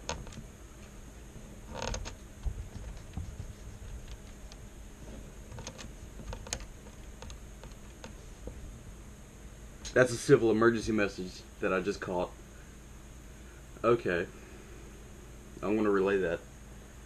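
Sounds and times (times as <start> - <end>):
faint room hiss: 0.0 - 17.0.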